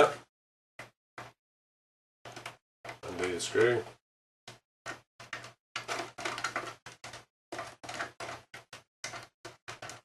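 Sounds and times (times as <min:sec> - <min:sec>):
screw scraping and clicking on metal: 0:04.9 - 0:10.0.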